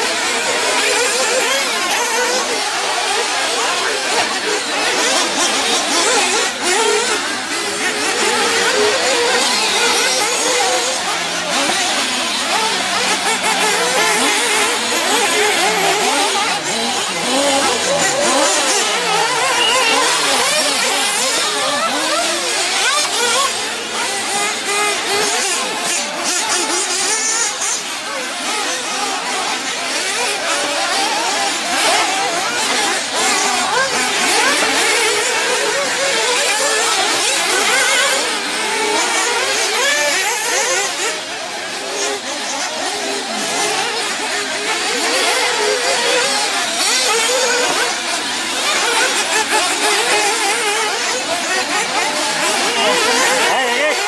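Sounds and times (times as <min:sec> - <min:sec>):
rc buggy engines revving: 0:00.0 - 0:54.0.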